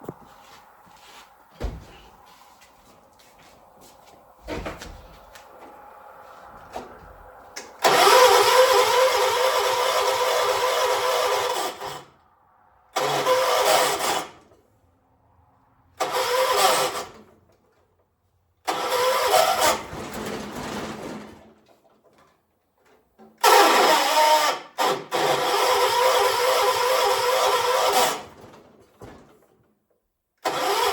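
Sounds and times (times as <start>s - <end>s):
starter cranking engine: 7.6s - 12.2s, 12.9s - 14.6s, 16.0s - 17.4s, 18.6s - 20.0s, 23.4s - 28.4s, 30.4s - 30.9s.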